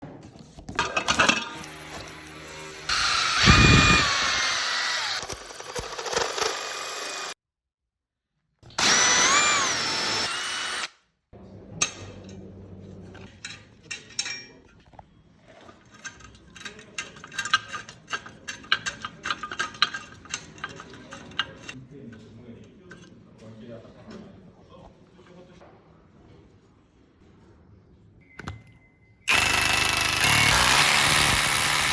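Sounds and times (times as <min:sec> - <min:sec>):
power drill running: 0:01.5 - 0:07.4, 0:08.8 - 0:10.9, 0:29.3 - 0:31.9
clicks of parts being handled: 0:16.0 - 0:21.8.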